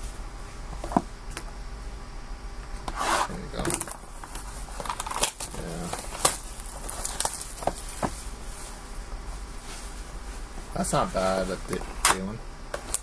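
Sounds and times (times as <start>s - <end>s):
cards rustling: 3.0s - 8.0s.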